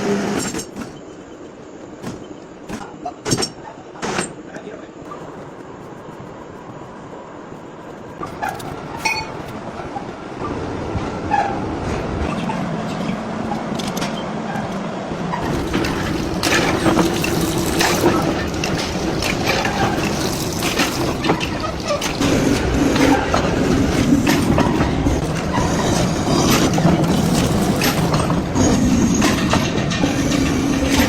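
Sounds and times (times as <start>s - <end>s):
steady hum: 4.8s - 9.8s
heavy workshop machinery running: 15.3s - 31.0s.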